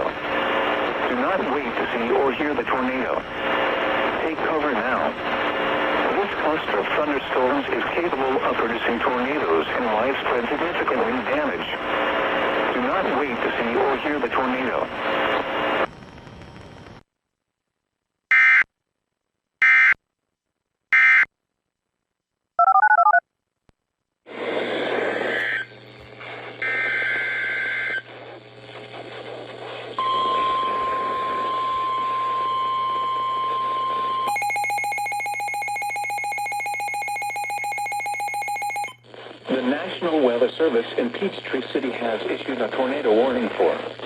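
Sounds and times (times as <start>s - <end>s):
humming radio hiss: 0.0s - 17.0s, 24.3s - 34.3s, 39.0s - 44.0s
fast pulsing electronic alarm: 33.4s - 39.0s
shrill data bursts: 34.3s - 39.0s
steady alert tone: 34.3s - 39.0s.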